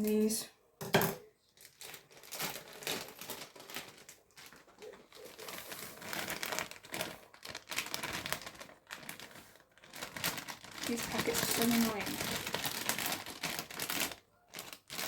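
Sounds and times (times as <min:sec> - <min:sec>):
wrapper crinkling and rustling: 0:01.4 - 0:15.0.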